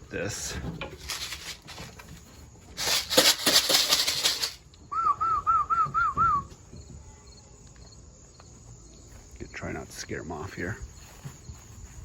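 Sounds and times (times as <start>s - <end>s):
loud rattling: 0.9s - 2.0s, 2.8s - 4.6s.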